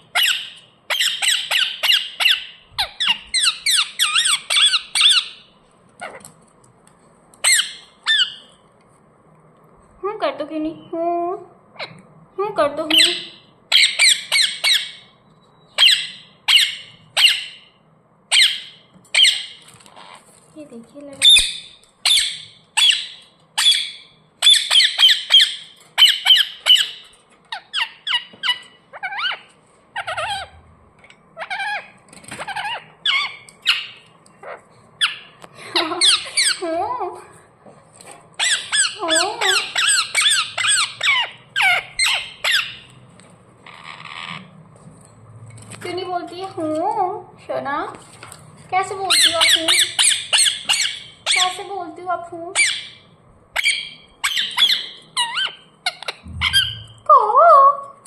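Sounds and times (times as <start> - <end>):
parakeet screeching: 0.1 - 6.3, 7.4 - 8.5, 12.9 - 15.1, 15.7 - 17.7, 18.3 - 20.3, 21.2 - 30.6, 31.4 - 36.7, 38.4 - 42.9, 43.6 - 44.5, 49.0 - 51.7, 52.5 - 57.1.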